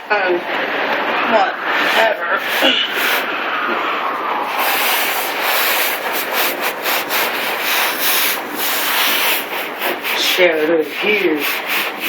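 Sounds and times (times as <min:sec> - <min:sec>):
scrub brush rasping on hard surface: 0:04.5 - 0:12.0.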